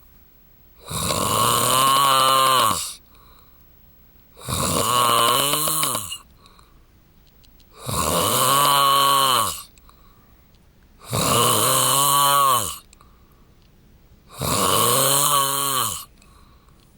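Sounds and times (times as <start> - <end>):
man snoring: 0.8 - 3.0, 4.4 - 6.3, 7.7 - 9.7, 11.0 - 12.9, 14.3 - 16.2.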